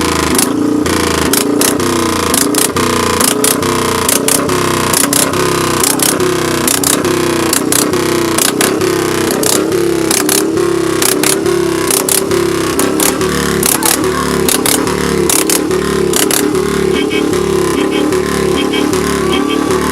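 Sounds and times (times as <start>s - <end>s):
motorcycle engine revving: 0.0s - 19.9s
sharp engine cracks: 5.0s - 16.5s.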